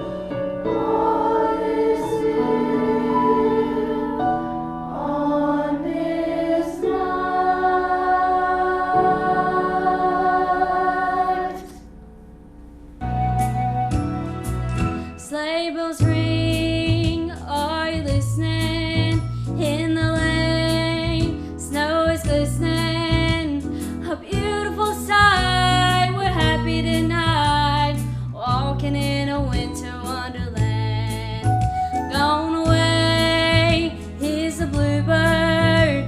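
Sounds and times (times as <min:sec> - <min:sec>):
instrumental accompaniment: 0:00.0 - 0:21.5
woman singing: 0:15.2 - 0:36.0.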